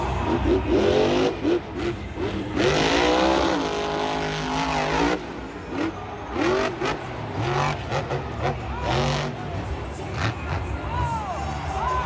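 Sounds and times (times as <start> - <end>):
car engine revving: 0.1 - 10.7.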